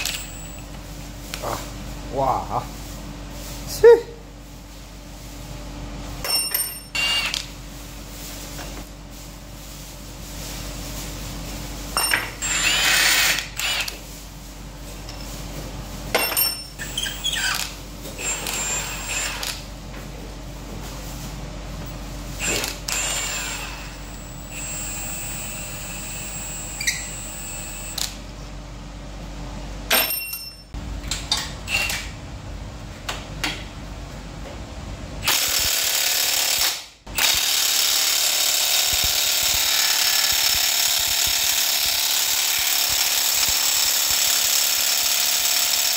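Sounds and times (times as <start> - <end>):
loud power tool: 12.4 - 14.0, 18.2 - 19.6, 22.4 - 28.1, 35.2 - 45.9.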